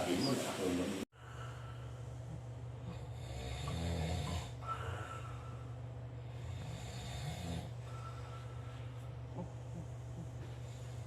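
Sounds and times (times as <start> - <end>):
dog snoring: 2.8 - 4.6, 6.4 - 7.8.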